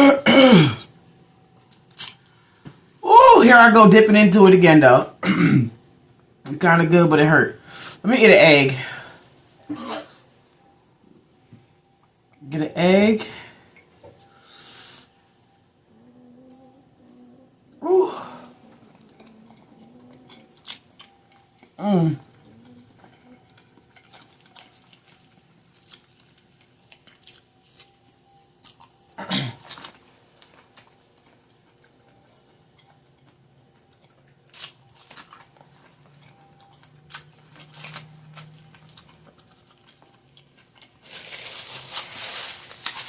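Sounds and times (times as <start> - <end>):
wet chewing and smacking: 18.7 - 41.0.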